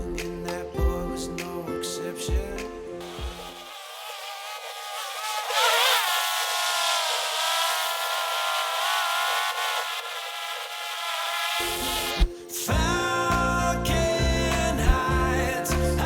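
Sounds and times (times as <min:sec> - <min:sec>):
filtered background music: 0:00.0 - 0:03.3, 0:11.6 - 0:16.0.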